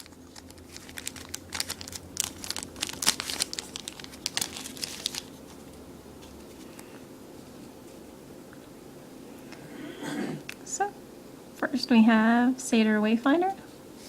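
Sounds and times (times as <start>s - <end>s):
foil wrapper crinkling and tearing: 0.0s - 6.9s.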